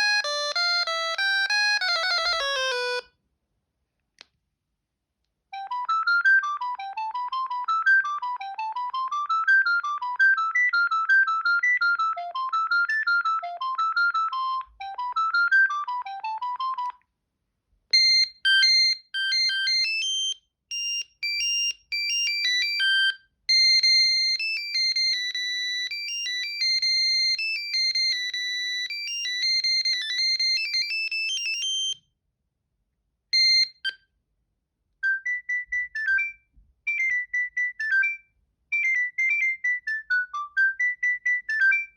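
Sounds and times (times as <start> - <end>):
mobile phone ringtone: 0.0 - 3.0, 18.0 - 32.0, 33.4 - 34.0.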